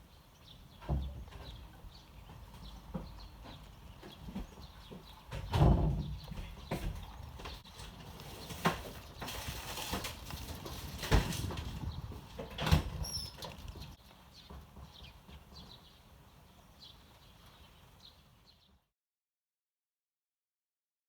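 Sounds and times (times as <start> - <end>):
sparrows chirping: 0.0 - 18.8
rustling: 6.5 - 14.8.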